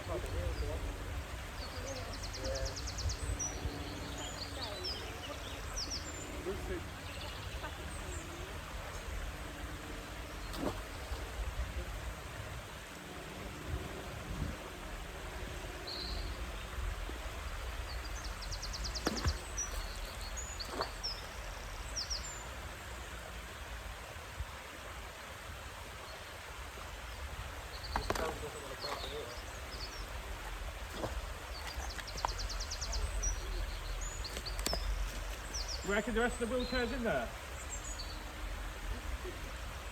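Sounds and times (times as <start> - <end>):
small birds chirping: 0.0 - 12.1, 14.8 - 23.6, 27.0 - 39.9
steady low rumble: 0.0 - 22.2.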